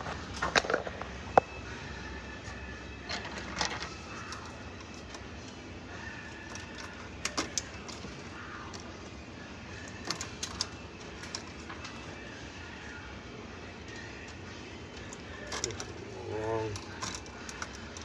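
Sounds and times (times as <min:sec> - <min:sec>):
rustling of electrical wires: 0:00.0 - 0:18.0
steady background noise: 0:00.0 - 0:18.0
clicks of tools being handled: 0:03.5 - 0:05.2, 0:06.3 - 0:08.9, 0:09.9 - 0:12.1, 0:15.0 - 0:18.0.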